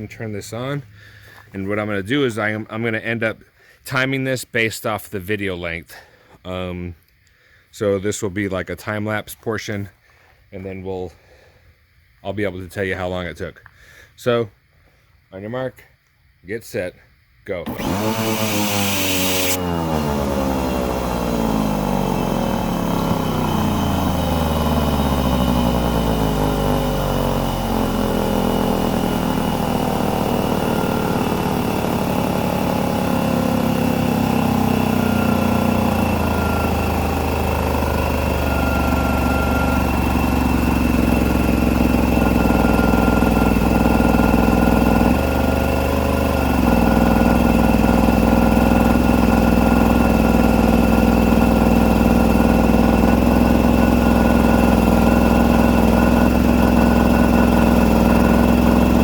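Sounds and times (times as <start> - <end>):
air compressor droning with whine: 16.6 - 59.0.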